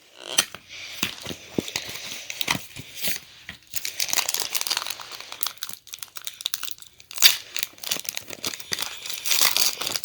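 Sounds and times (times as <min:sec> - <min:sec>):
foil wrapper crinkling and tearing: 0:01.2 - 0:10.0.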